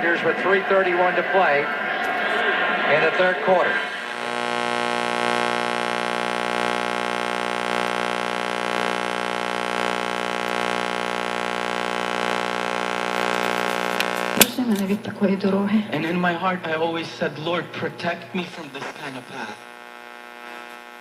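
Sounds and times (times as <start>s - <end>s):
car radio speaker buzzing: 3.2s - 15.0s, 18.4s - 21.0s.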